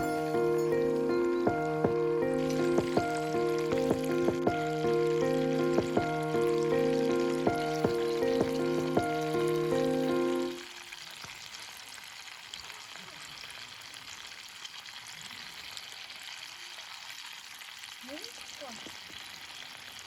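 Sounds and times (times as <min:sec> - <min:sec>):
background music: 0:00.0 - 0:10.6
food frying in a pan: 0:00.0 - 0:20.0.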